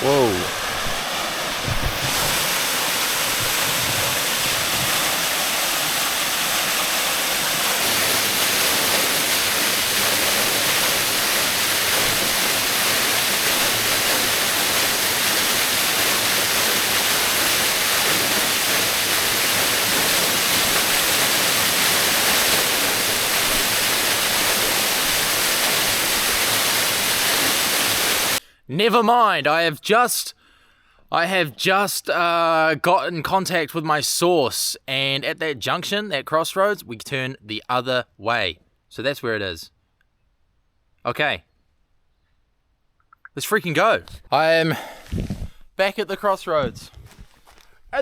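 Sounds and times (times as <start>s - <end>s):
waterfall rushing: 0.0s - 28.4s.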